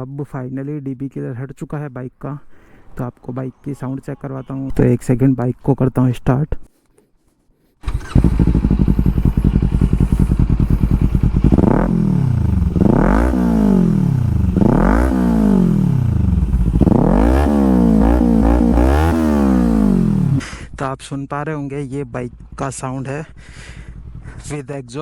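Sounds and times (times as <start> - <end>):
motorcycle engine revving: 7.8 - 20.8, 22.2 - 24.6
motorcycle engine starting and idling: 7.8 - 25.0.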